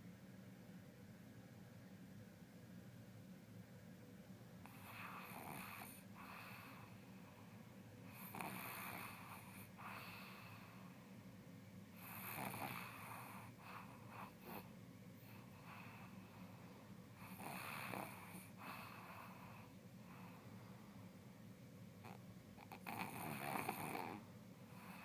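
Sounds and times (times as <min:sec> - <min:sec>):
person snoring: 0:08.2 - 0:10.7, 0:12.0 - 0:14.7, 0:17.2 - 0:19.6, 0:22.6 - 0:24.2.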